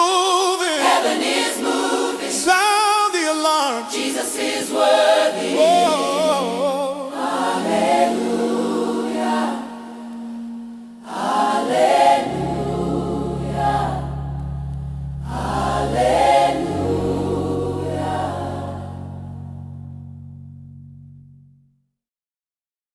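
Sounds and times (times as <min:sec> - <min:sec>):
gospel choir singing: 0:00.0 - 0:19.8
held low notes: 0:07.8 - 0:21.5.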